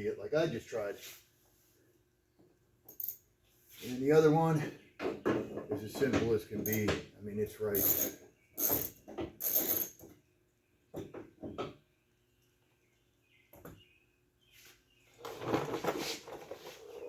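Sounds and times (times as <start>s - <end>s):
rattling and scraping of metal parts: 5.3s - 7.0s, 7.7s - 10.1s, 15.2s - 17.0s
metallic clicks and knocks: 5.9s - 7.0s.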